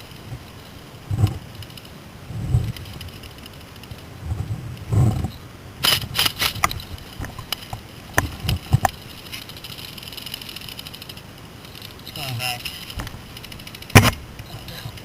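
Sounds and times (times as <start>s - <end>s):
low thuds: 12.9s - 14.6s.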